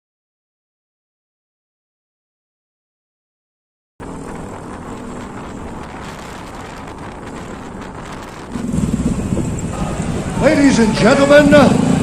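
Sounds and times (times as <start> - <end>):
motorbike engine: 4.0 - 12.0
wind rush: 4.0 - 12.0.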